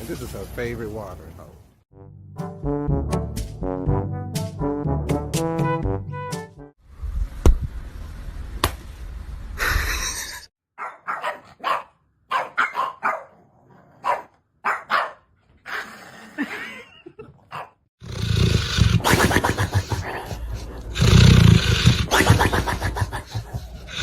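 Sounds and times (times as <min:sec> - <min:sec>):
dog barking: 0:10.8 - 0:15.3, 0:17.5 - 0:17.8.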